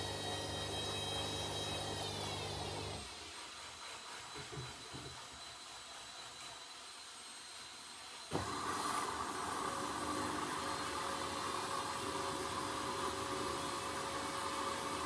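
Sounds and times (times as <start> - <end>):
washing machine running: 0.0 - 3.2, 8.3 - 15.0.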